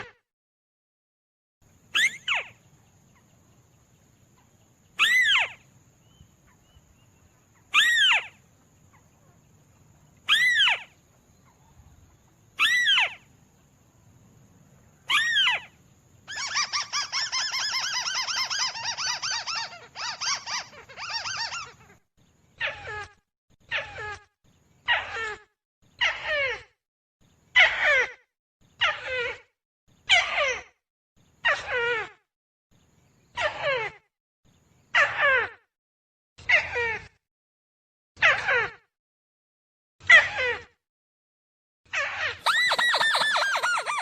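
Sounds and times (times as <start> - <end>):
fast chattering bird trill: 2.0 - 2.5, 16.3 - 21.8, 42.4 - 44.0
crake calling: 42.4 - 44.0.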